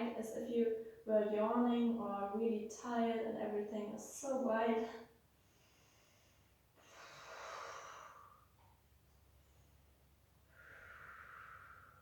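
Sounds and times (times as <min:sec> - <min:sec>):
woman breathing deeply: 0:05.4 - 0:08.6, 0:09.4 - 0:12.0.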